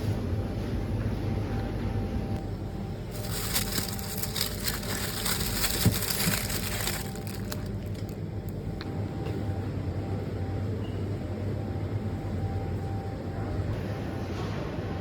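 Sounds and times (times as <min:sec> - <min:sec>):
steady low hum: 0:00.0 - 0:15.0
crinkling crackling clicks: 0:03.2 - 0:08.6.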